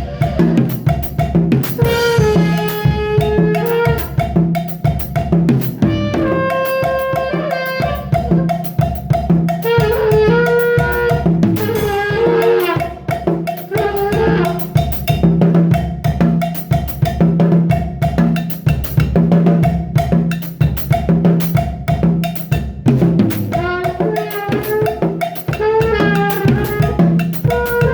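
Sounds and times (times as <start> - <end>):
drum kit playing a beat: 0.0 - 27.9
song melody: 5.8 - 8.5, 23.3 - 24.6.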